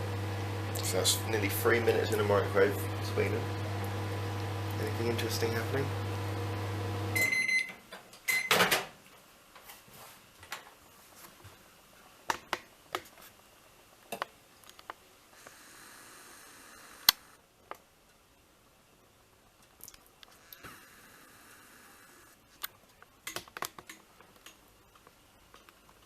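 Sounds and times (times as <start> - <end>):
microwave oven humming: 0.0 - 7.7
microwave short high beeps: 7.1 - 7.7.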